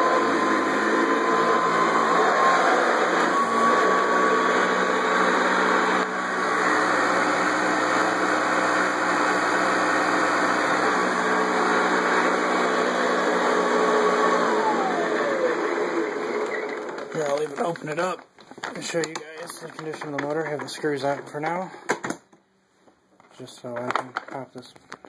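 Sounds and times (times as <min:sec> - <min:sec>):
vacuum cleaner motor running: 0:00.0 - 0:18.1.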